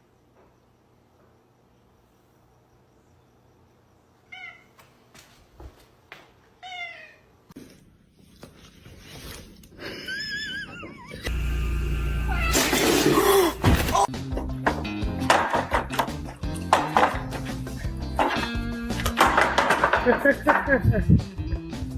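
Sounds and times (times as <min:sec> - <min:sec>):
cat meowing: 0:04.3 - 0:04.7, 0:06.6 - 0:07.3.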